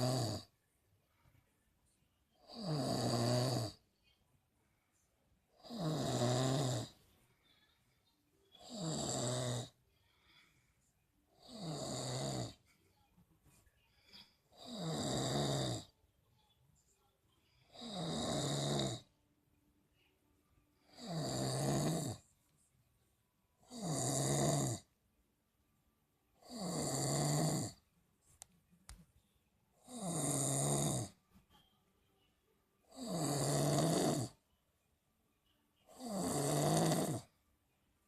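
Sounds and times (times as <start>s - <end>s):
loud rhythmic snoring: 0.0s - 0.6s, 2.4s - 3.9s, 5.5s - 7.0s, 8.6s - 9.8s, 11.3s - 12.7s, 14.5s - 16.0s, 17.7s - 19.1s, 20.8s - 22.3s, 23.6s - 24.9s, 26.4s - 27.9s, 29.8s - 31.2s, 32.8s - 34.4s, 35.9s - 37.4s.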